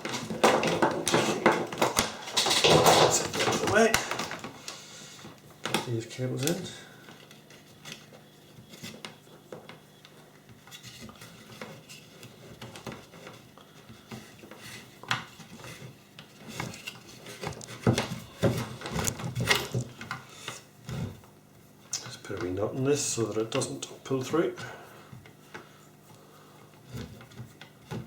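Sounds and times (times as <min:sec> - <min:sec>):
parts clattering: 0:00.0 - 0:04.6.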